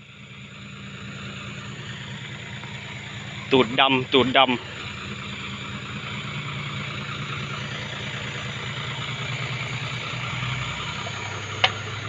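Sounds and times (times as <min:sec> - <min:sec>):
diesel truck engine running: 0:00.0 - 0:12.0.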